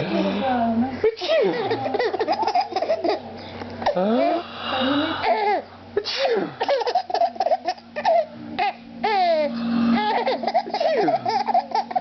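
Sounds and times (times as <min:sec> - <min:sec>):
steady low hum: 0:00.0 - 0:12.0
baby giggling and squealing: 0:06.7 - 0:12.0.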